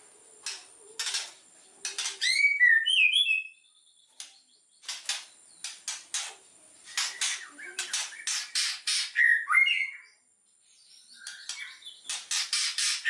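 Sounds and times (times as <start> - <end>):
bird singing whistled notes: 2.2 - 4.9, 7.0 - 13.0.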